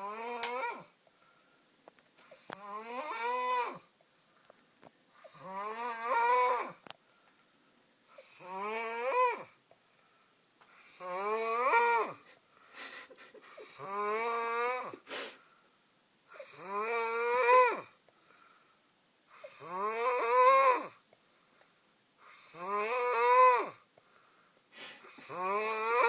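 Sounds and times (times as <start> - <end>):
man snoring: 0.0 - 0.9, 2.3 - 3.9, 5.2 - 6.8, 8.2 - 9.6, 10.8 - 12.3, 13.5 - 15.3, 16.3 - 18.0, 19.4 - 21.0, 22.3 - 23.9, 25.1 - 26.0.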